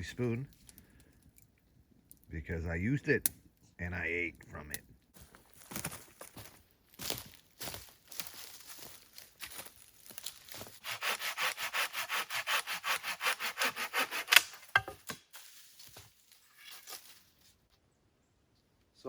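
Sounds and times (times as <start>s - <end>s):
hand saw cutting wood: 10.8s - 14.9s.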